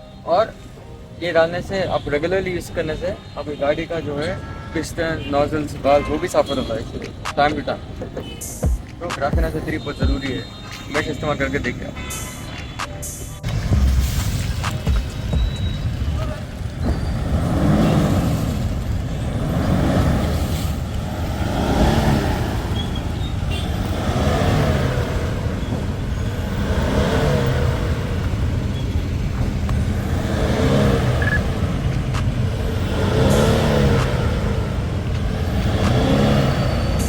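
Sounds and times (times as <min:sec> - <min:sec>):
diesel engine revving: 0:13.4 - 0:37.0.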